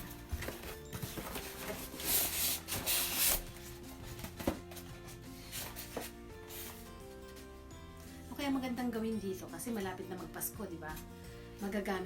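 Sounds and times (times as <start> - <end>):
packaging rubbing and scraping: 0.0 - 6.9
background music with held notes: 0.0 - 12.0.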